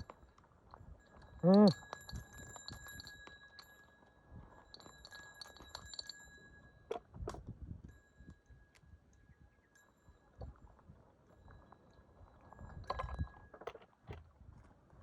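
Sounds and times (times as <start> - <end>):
light metallic clinks: 0.0 - 10.8.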